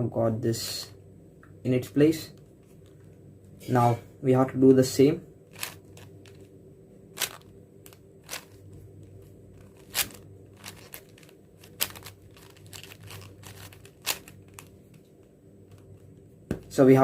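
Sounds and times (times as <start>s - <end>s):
soft plastic scrapes: 7.2s - 15.1s
puzzle cube plastic clicks: 9.6s - 15.0s.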